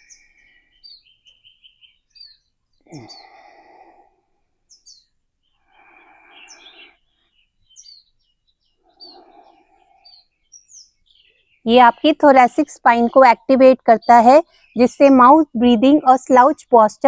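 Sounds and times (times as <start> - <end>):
small birds chirping: 0.0 - 17.0
person breathing in and out: 2.8 - 4.6, 5.6 - 7.1, 8.8 - 10.3.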